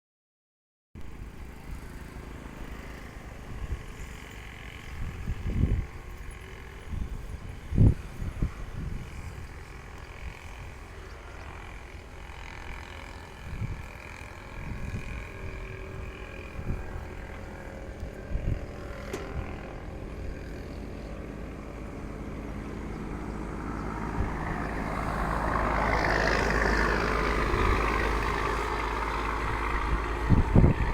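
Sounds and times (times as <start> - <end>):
excavator diesel engine running: 1.1 - 30.9
engine knocks: 9.0 - 30.9.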